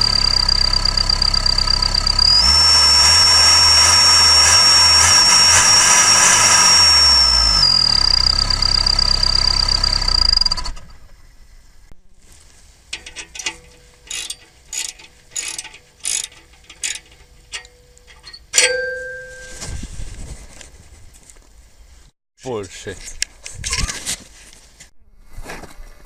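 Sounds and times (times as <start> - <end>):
high exhaust whistle: 0.0 - 10.7
vehicle engine running: 0.0 - 11.4.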